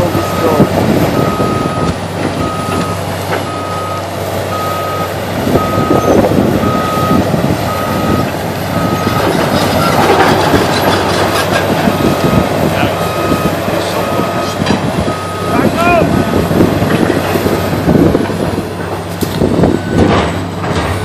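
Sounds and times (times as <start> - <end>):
excavator travel alarm beeping: 0.0 - 11.2, 11.9 - 16.5, 19.7 - 20.4
diesel engine running: 0.0 - 21.0.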